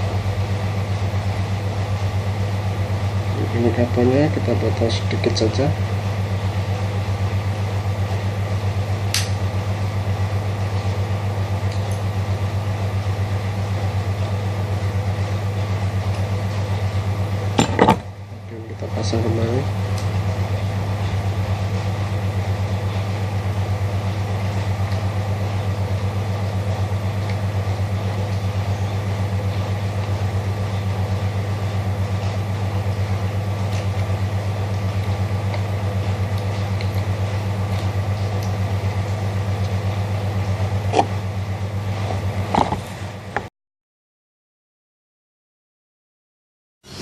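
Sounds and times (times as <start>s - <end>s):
photocopier humming: 0.0s - 43.5s
sharp click: 9.1s - 9.4s.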